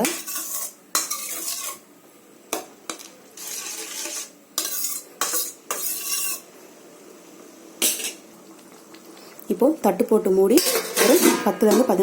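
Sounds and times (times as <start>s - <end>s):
spoon scraping a pan: 0.0s - 1.9s, 2.5s - 6.6s, 7.8s - 8.2s, 10.6s - 12.0s.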